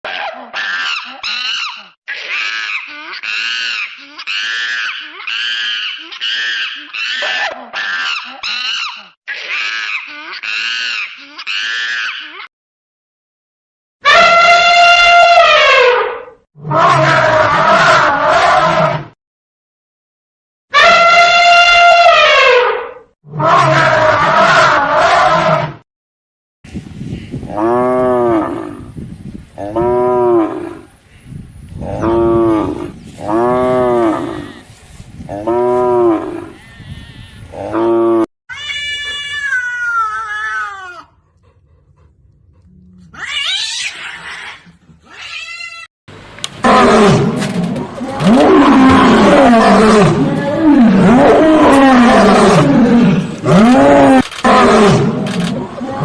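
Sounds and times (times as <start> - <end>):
animal calls rising and falling: 46.6 - 56.0
lion roaring: 46.6 - 56.0.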